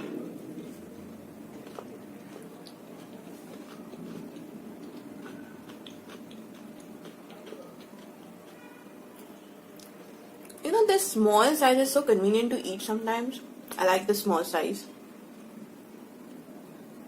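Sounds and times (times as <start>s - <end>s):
chewing food: 0.6s - 10.6s.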